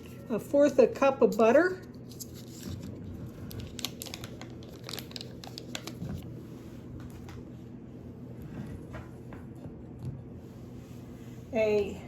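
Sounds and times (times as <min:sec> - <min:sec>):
clicks and crinkling in kitchen: 0:01.0 - 0:06.4.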